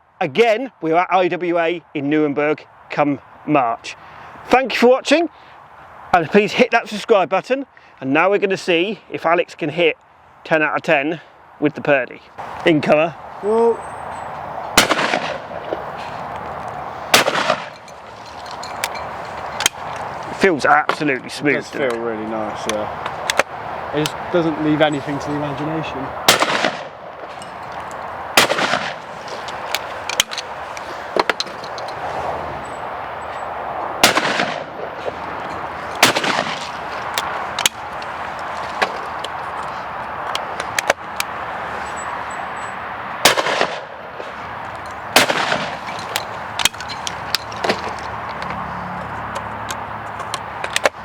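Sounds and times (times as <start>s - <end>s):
shotgun shots: 14.8s - 15.6s, 17.1s - 17.8s, 26.2s - 27.0s, 28.4s - 29.1s, 34.0s - 34.7s, 36.0s - 36.7s, 43.2s - 43.9s, 45.1s - 45.8s
faint cracks: 26.3s - 32.1s.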